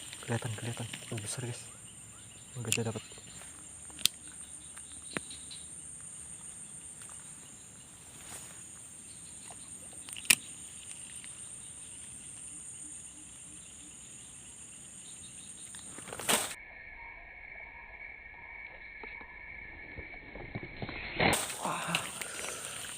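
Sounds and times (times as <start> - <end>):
rustle: 0.0 - 16.6
insects trilling: 0.0 - 22.9
sharp click: 10.0 - 11.4.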